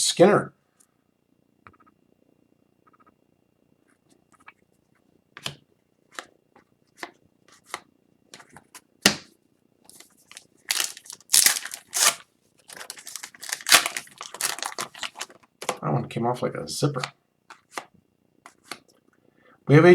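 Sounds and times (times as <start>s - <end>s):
foil wrapper tearing: 9.9s - 15.4s.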